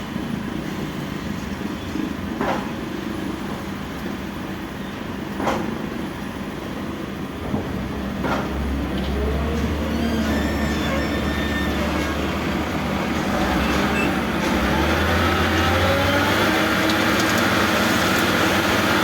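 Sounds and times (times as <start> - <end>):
diesel engine running: 6.0 - 19.0.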